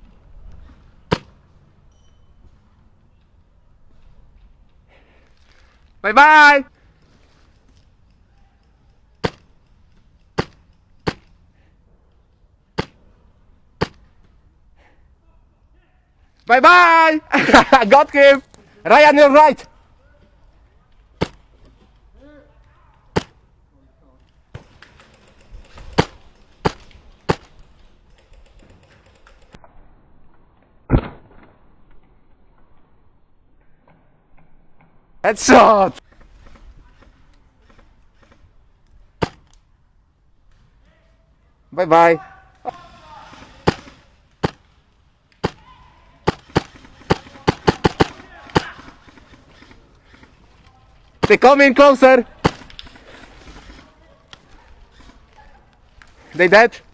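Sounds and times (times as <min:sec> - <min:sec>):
airsoft rifle shots cracking: 0:10.3 - 0:11.4, 0:43.3 - 0:44.7, 0:45.4 - 0:50.4, 0:51.2 - 0:53.8.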